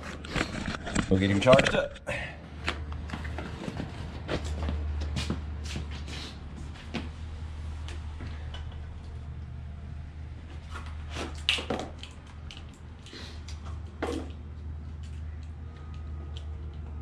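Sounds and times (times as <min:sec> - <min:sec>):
handling clicks and rustles: 0:00.0 - 0:01.9.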